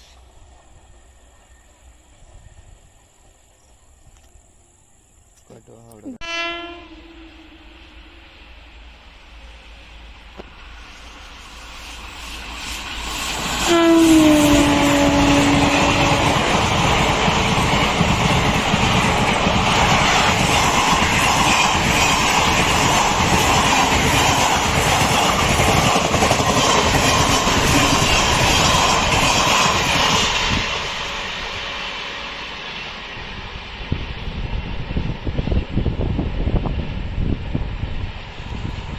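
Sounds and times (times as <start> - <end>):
train horn: 6.2 - 8.4, 13.5 - 16.5
train wheels clattering: 10.3 - 33.1.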